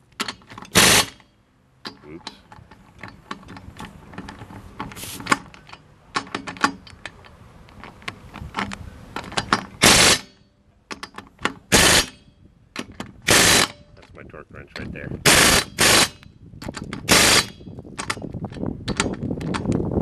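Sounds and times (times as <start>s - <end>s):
impact wrench hammering: 10.9s - 12.2s.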